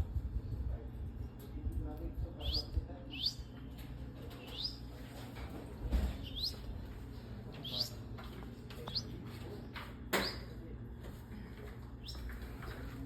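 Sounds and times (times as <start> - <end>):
steady low rumble: 0.0 - 4.8
songbird chirping: 2.4 - 5.2, 6.0 - 6.8, 7.5 - 9.3, 12.0 - 13.0.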